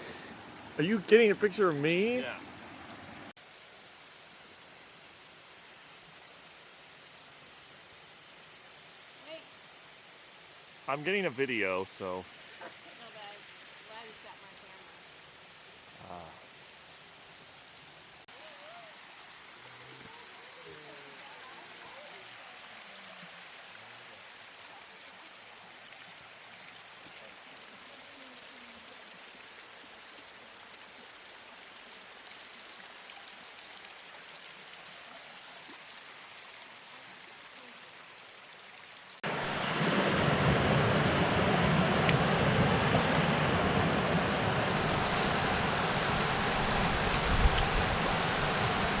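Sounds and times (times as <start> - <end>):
waterfall roaring: 0.0 - 3.4, 10.9 - 13.4, 39.2 - 49.0.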